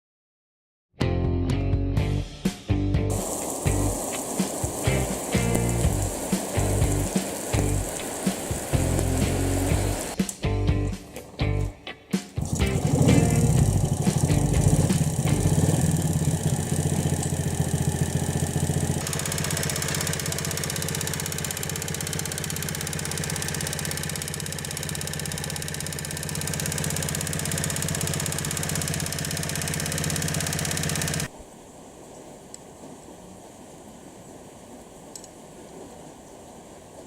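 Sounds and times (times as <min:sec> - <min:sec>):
loud engine clicking: 0:12.4 - 0:31.3
motorcycle engine idling: 0:12.4 - 0:31.3.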